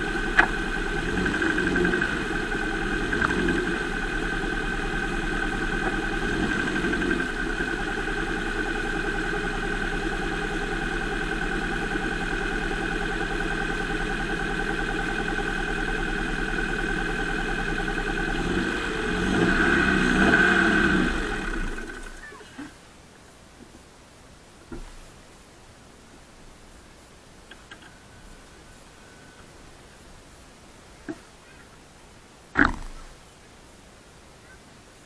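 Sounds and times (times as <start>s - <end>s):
car engine idling: 0.0s - 22.7s
constant whine: 0.0s - 22.8s, 24.6s - 33.4s.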